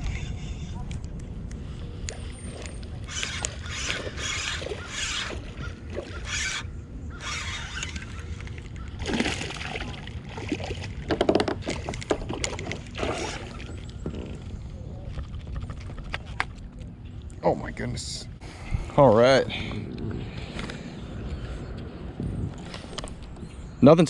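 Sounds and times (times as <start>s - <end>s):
steady low rumble: 0.0s - 4.8s, 12.8s - 24.0s
water splashing: 9.0s - 14.0s.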